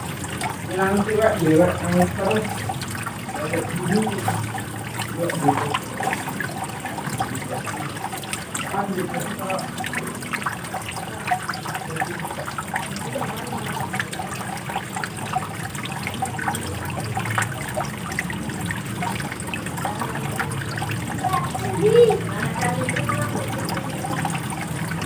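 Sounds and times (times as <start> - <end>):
running water splashing: 0.0 - 25.0.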